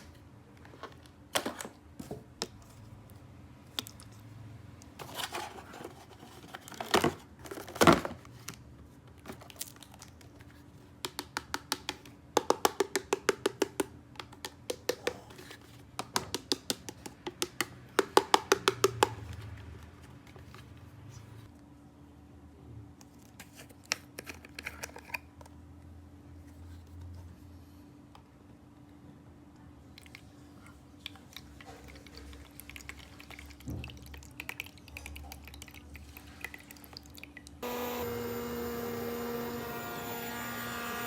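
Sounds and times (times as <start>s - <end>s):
plastic toy pieces tapping: 11.0s - 15.2s, 16.0s - 19.2s.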